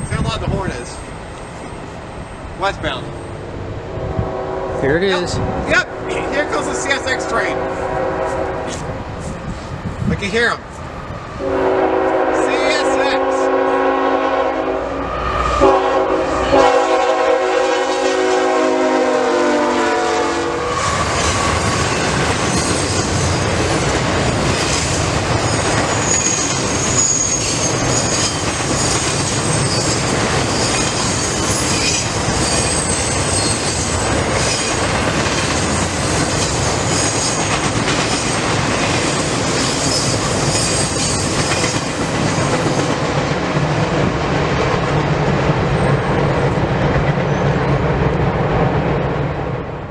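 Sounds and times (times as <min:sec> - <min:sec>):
train wheels rumbling on rails: 0:00.0 - 0:49.9
rail joint clatter: 0:21.0 - 0:43.8
wheel squeal: 0:25.9 - 0:34.8.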